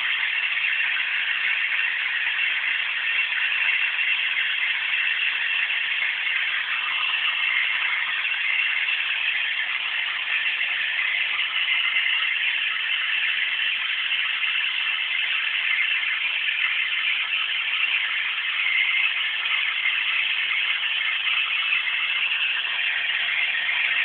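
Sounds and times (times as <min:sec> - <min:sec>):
vacuum cleaner running: 0:22.4 - 0:24.0.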